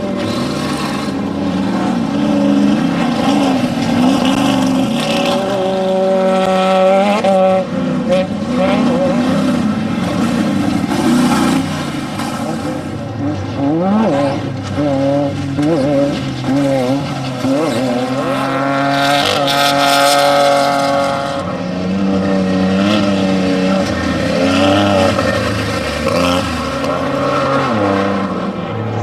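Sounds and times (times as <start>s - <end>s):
race vehicle engines revving: 0.0s - 29.0s.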